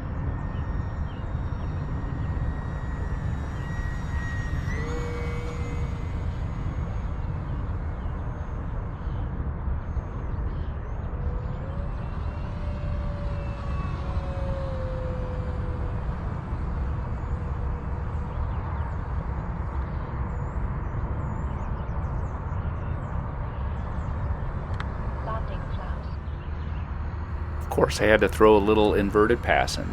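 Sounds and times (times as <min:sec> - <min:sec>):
model plane motor whine: 0:00.0 - 0:21.6, 0:28.2 - 0:29.9
wind rumbling on microphone: 0:00.0 - 0:29.9.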